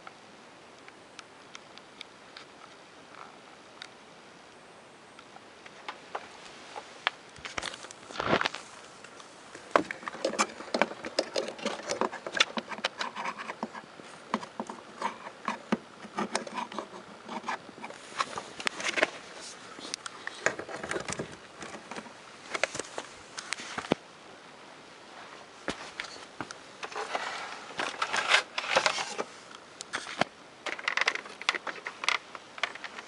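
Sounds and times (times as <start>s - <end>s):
handling clicks and knocks: 7.0s - 19.2s, 19.8s - 24.0s, 25.7s - 33.0s.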